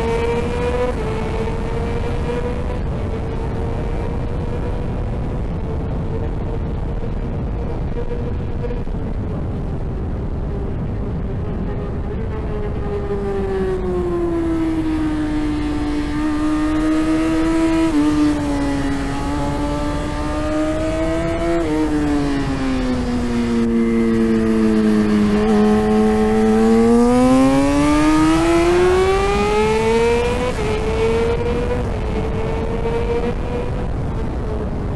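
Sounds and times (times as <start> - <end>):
motorcycle engine revving: 0.0 - 34.9
wind rushing: 0.0 - 34.9.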